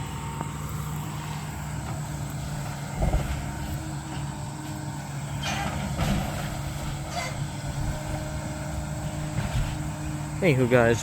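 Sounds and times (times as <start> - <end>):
diesel engine running: 0.0 - 11.0
dull thump: 2.8 - 4.3, 5.4 - 8.3.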